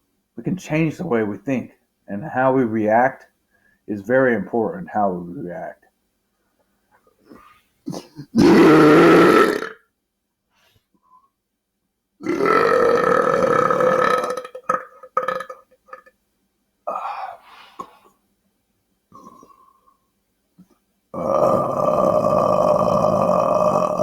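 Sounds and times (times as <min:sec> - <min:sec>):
quiet throat sounds: 0:07.2 - 0:09.7, 0:16.9 - 0:18.2, 0:19.1 - 0:20.1, 0:21.2 - 0:24.0
man belching loudly: 0:07.9 - 0:09.8, 0:12.2 - 0:16.1, 0:21.2 - 0:24.0.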